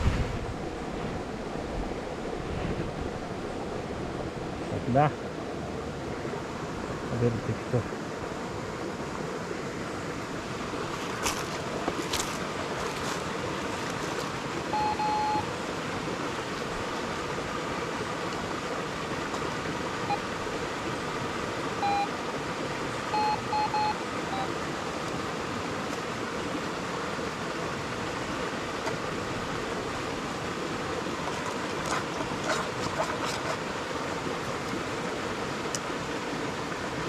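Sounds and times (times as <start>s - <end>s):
small waterfall rushing: 0.0s - 37.0s
metal detector beeps: 14.7s - 15.5s, 21.8s - 22.1s, 23.1s - 24.5s.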